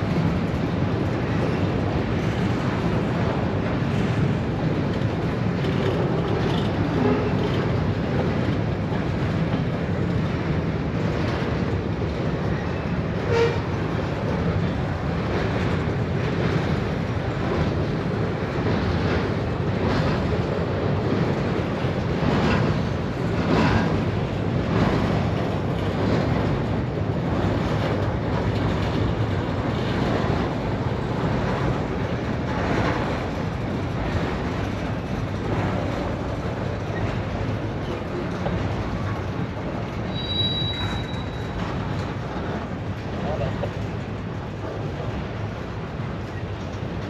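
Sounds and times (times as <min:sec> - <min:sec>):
rail clacks: 0:00.0 - 0:47.0
train wheels rumbling on rail: 0:00.0 - 0:47.0
high wheel squeal: 0:40.1 - 0:41.6.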